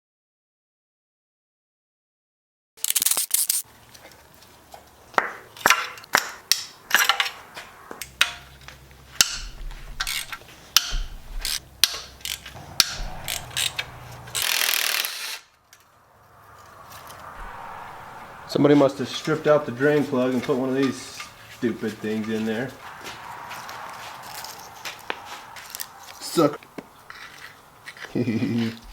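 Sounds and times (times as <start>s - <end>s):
tools and parts clinking: 5.5s - 15.0s, 24.2s - 24.8s
hand ratchet clicking: 9.2s - 15.4s.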